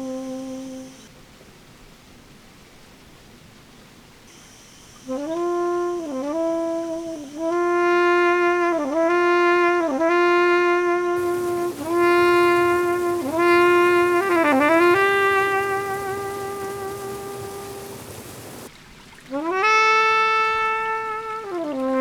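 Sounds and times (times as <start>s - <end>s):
brass-like wind instrument notes: 0.0s - 1.1s, 5.0s - 18.7s, 19.3s - 22.0s.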